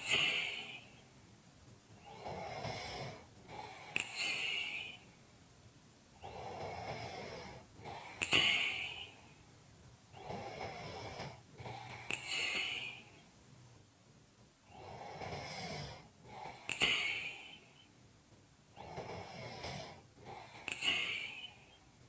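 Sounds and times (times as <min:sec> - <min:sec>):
person snoring: 0:00.0 - 0:01.0, 0:02.0 - 0:05.0, 0:06.2 - 0:09.2, 0:10.2 - 0:13.2, 0:14.7 - 0:17.8, 0:18.8 - 0:21.8.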